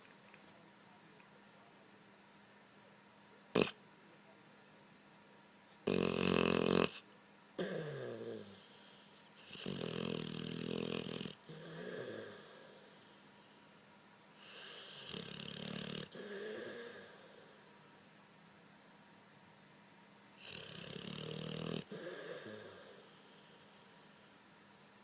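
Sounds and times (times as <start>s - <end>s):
dog snoring: 3.5s - 3.8s, 5.8s - 7.0s, 7.6s - 13.0s, 14.4s - 17.6s, 20.4s - 24.3s.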